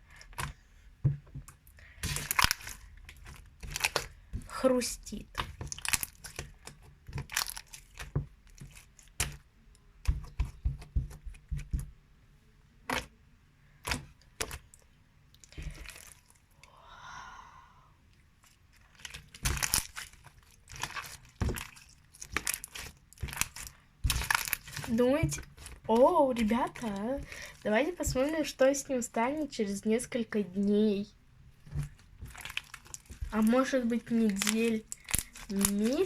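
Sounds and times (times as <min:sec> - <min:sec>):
slime crackling and clicking: 0:01.5 - 0:04.2, 0:05.2 - 0:09.4, 0:18.9 - 0:28.6, 0:31.9 - 0:36.0.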